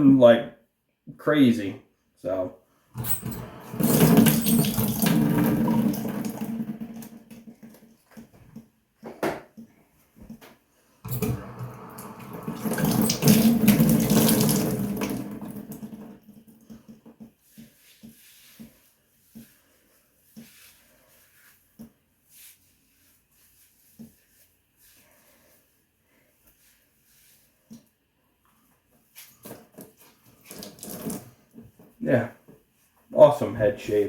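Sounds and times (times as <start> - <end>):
tap water splashing in sink: 3.1 - 8.6, 11.1 - 17.3, 29.4 - 31.9.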